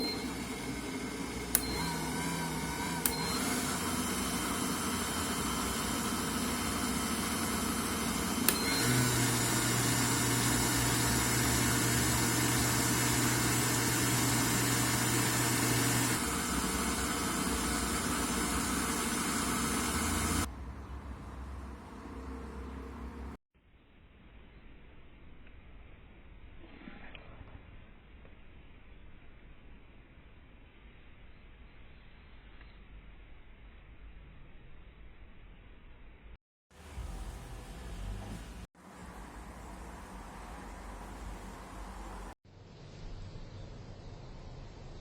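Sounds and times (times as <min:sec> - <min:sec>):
mixer motor kneading dough: 0:00.0 - 0:20.5.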